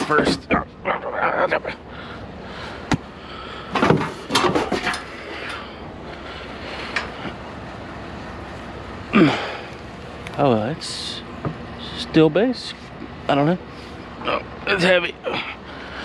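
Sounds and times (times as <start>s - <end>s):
background hum: 0.0s - 16.0s
knocks and rattles: 3.7s - 5.2s.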